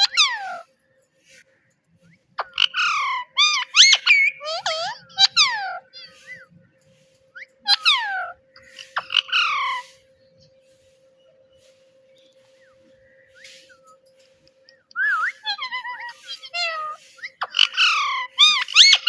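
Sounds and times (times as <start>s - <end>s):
parrot calling: 0.0s - 0.7s, 2.4s - 10.1s, 14.9s - 19.0s.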